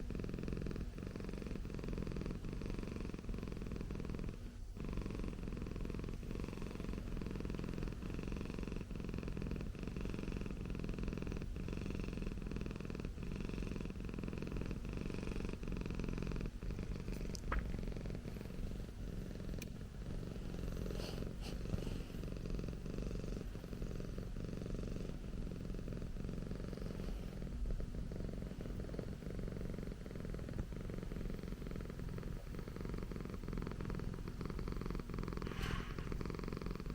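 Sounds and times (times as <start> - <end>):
cat purring: 0.0 - 36.9
faint clicks: 17.1 - 17.8.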